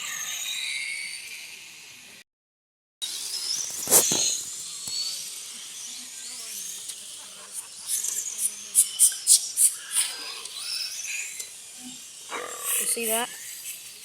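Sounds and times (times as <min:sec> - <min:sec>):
sharp ticks and spits: 0:03.5 - 0:05.0, 0:06.8 - 0:10.7.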